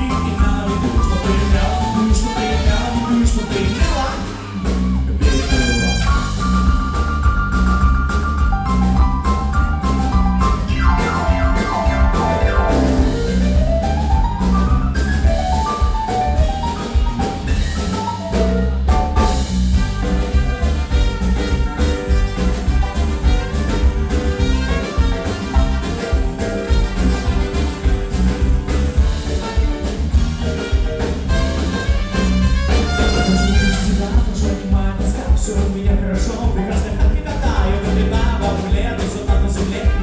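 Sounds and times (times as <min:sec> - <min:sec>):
pop music beat and melody: 0:00.0 - 0:04.4, 0:05.3 - 0:18.3, 0:30.8 - 0:40.0.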